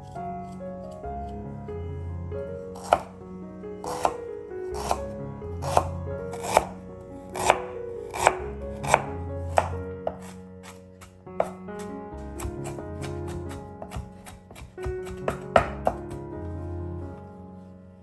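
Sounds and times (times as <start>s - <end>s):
knife chopping on cutting board: 2.8s - 3.1s, 3.8s - 5.0s, 5.6s - 16.2s.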